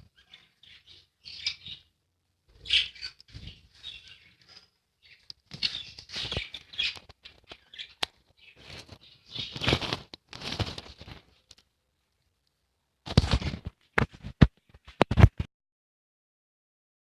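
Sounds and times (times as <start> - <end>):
birds rustling in cage: 5.4 - 7.7, 8.4 - 11.5.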